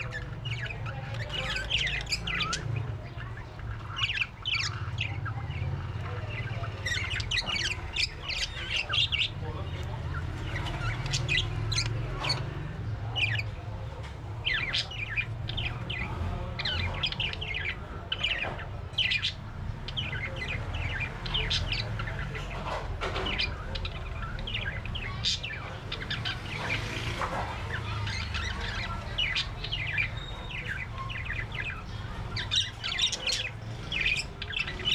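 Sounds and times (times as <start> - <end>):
parrots chirping and squawking: 0.0 - 34.9.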